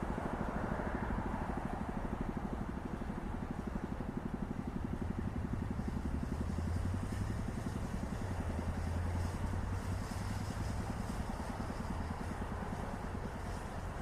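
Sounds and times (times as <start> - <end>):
engine idling: 0.0 - 14.0.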